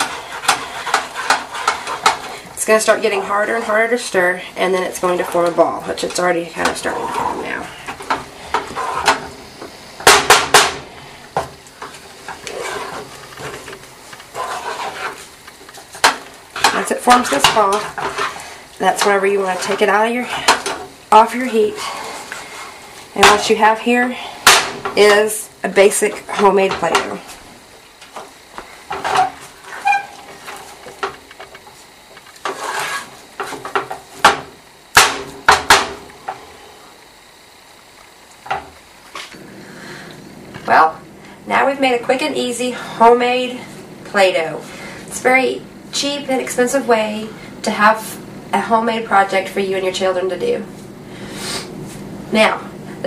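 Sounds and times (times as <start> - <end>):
spoon scraping in pot: 0.0 - 2.3, 8.6 - 9.2, 12.2 - 15.9, 16.6 - 20.4, 32.4 - 33.5
utensil stirring dough in saucepan: 0.0 - 34.2.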